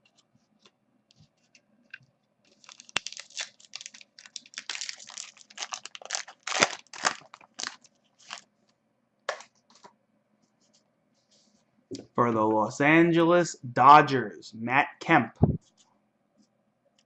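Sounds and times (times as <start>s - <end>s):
foil wrapper crinkling and tearing: 2.5s - 8.5s.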